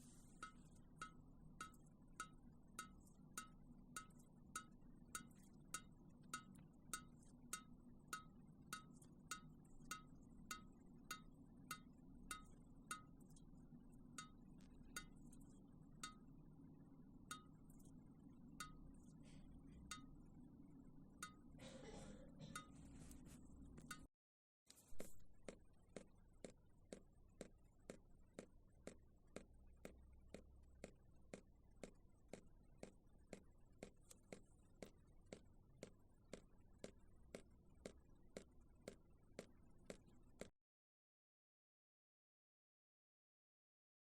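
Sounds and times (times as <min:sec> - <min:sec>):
water drops plinking: 0:21.2 - 0:21.5.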